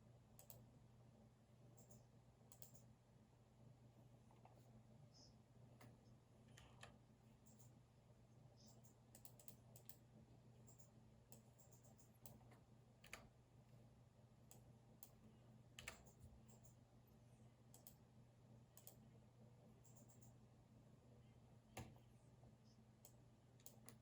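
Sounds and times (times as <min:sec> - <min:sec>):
computer keyboard typing: 0:01.8 - 0:02.9, 0:08.7 - 0:10.0, 0:15.8 - 0:16.8.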